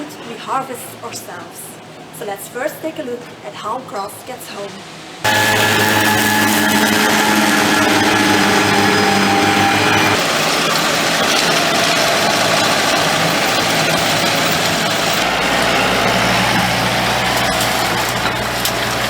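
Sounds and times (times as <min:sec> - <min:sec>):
tractor engine running: 0:05.3 - 0:19.0.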